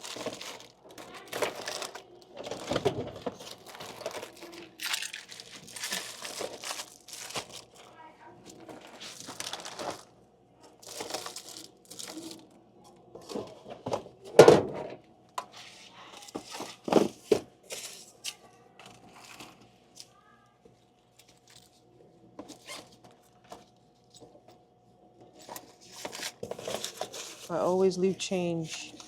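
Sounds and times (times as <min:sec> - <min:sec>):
snack packets crinkling: 0:00.0 - 0:10.2, 0:10.8 - 0:12.5
faint hum: 0:00.0 - 0:29.0.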